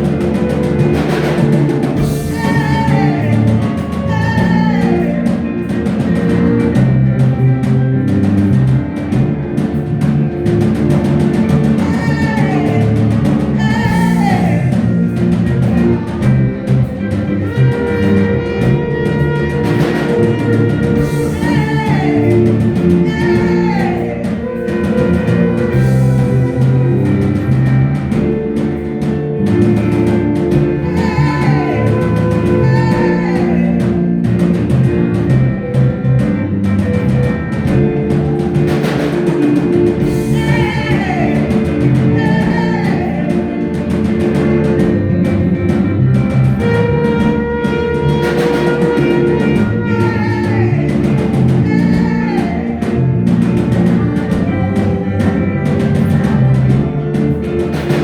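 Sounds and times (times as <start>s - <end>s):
voices singing: 0.0s - 7.6s, 11.2s - 27.6s, 29.8s - 34.3s, 37.8s - 44.8s, 46.5s - 58.0s
band playing praise music: 0.0s - 58.0s
drum kit steady beat: 0.0s - 58.0s.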